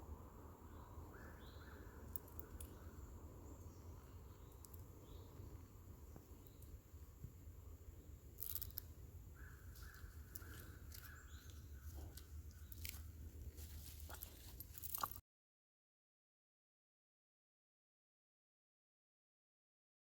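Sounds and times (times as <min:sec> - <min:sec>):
footsteps crunching on dry leaves: 0:09.7 - 0:15.2.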